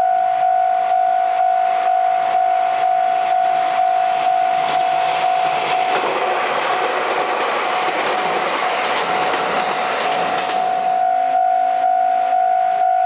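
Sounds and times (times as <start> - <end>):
level crossing warning bell: 0.0 - 6.4, 7.9 - 13.0
train wheels clattering on rails: 4.2 - 10.9.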